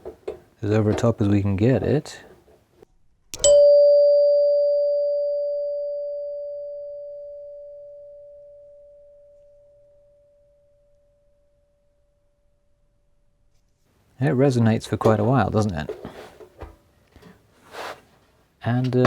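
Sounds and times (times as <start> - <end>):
door chime tone bar ringing: 3.4 - 9.0.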